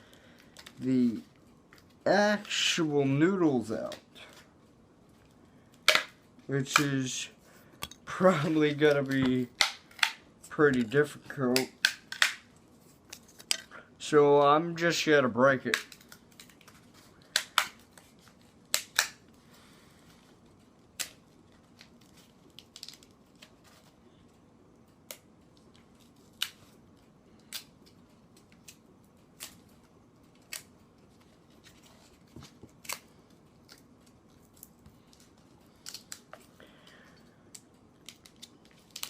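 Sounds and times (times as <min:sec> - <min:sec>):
dry noodles snapping: 0:27.4 - 0:29.7, 0:32.8 - 0:36.4, 0:37.5 - 0:39.0.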